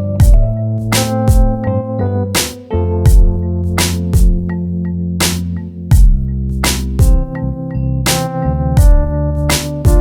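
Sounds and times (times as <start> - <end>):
electronic music with synth chords: 0.0 - 10.0
deep kick drum: 0.2 - 1.7, 3.1 - 3.5, 4.1 - 4.5, 5.9 - 6.4, 7.0 - 7.4, 8.8 - 9.2.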